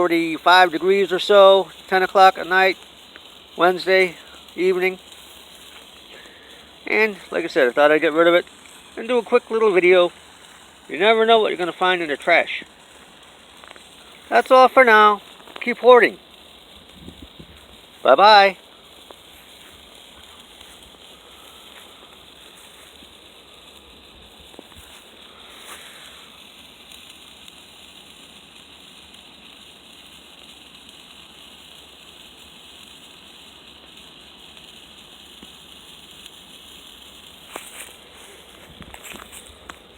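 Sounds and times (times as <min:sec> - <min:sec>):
sparkler fizzing: 0:00.0 - 0:39.9.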